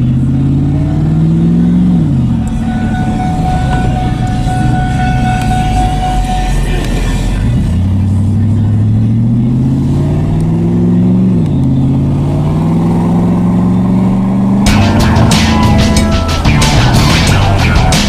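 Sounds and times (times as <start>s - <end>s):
truck engine accelerating: 0.0s - 18.0s
music with a beat: 2.4s - 7.8s, 14.6s - 18.0s.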